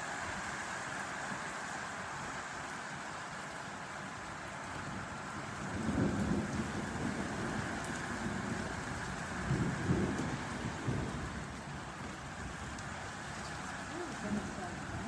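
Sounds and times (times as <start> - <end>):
steady rain falling: 0.0 - 15.0
low rumble of thunder: 4.8 - 15.0.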